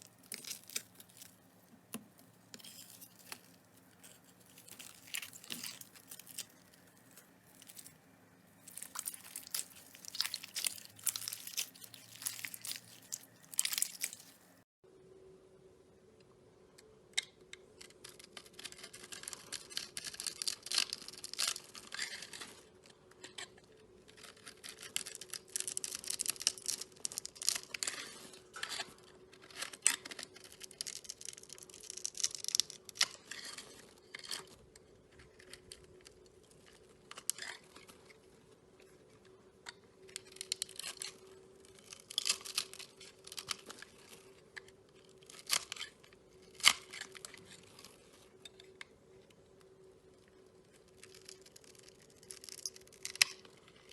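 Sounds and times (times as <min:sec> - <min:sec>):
slime squeezed by hand crackling: 0:00.0 - 0:14.6.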